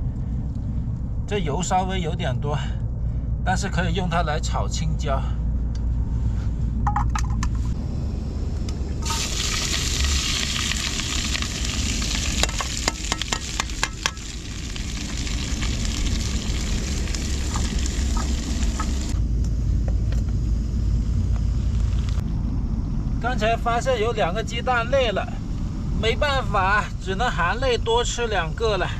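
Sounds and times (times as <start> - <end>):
low rumble: 0.0 - 28.9
peppers sizzling in hot oil: 9.0 - 19.1.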